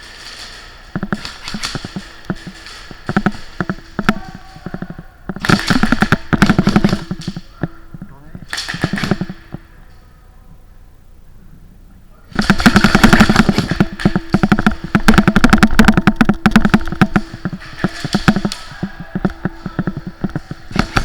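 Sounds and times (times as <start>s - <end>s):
airsoft guns firing full-auto: 0.0s - 9.8s, 12.3s - 21.0s.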